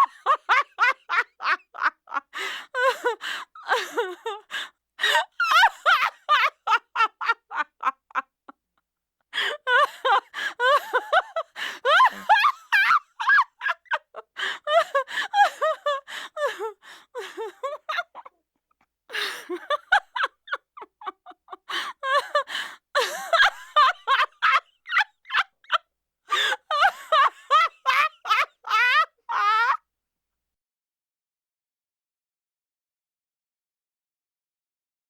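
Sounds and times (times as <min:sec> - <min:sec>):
person laughing: 0:00.0 - 0:08.3, 0:09.4 - 0:18.3, 0:19.1 - 0:29.8.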